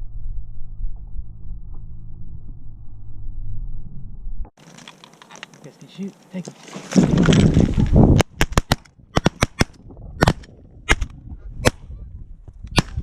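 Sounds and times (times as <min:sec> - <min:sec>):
shotgun shots: 0:08.2 - 0:11.8, 0:12.7 - 0:13.0.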